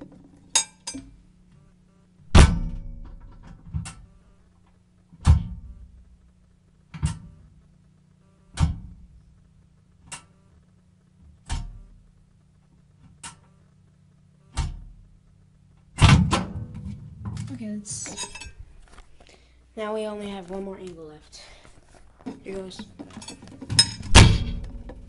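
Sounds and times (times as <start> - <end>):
steady low hum: 0.0 - 25.0
sharp knocks: 2.3 - 4.0, 23.6 - 25.0.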